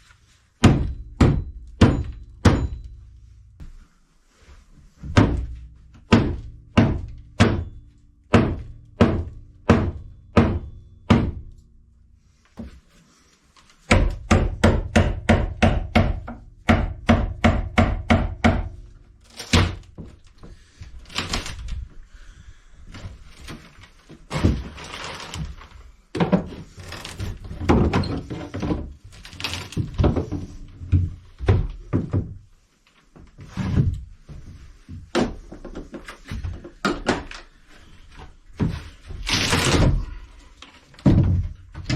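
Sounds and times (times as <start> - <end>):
wood cracking and scraping: 19.2 - 20.4, 21.0 - 21.9, 22.9 - 30.6, 38.8 - 41.9.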